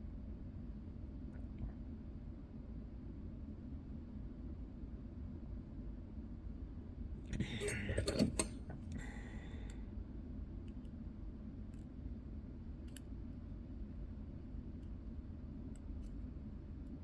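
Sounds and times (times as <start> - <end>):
steady low hum: 0.0 - 17.0
metal scrape: 7.4 - 8.6
metal watch parts clicking: 7.4 - 8.6.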